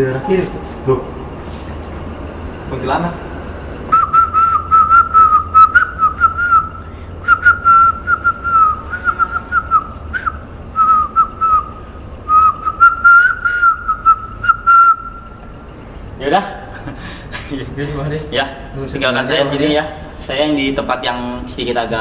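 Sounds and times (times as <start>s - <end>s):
high whistled call: 0.0s - 15.6s.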